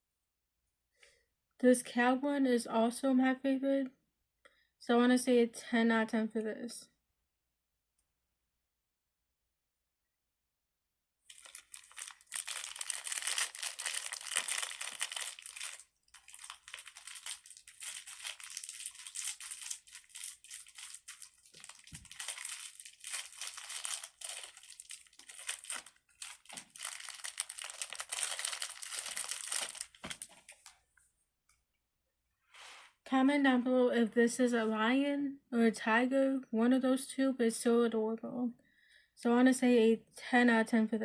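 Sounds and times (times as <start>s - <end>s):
wrapping crumpling and crackling: 11.2s - 30.8s.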